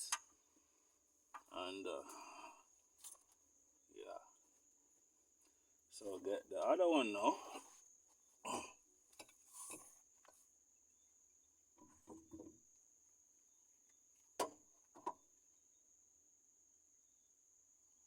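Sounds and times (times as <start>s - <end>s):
faint clicks and knocks of tools: 9.1s - 10.4s.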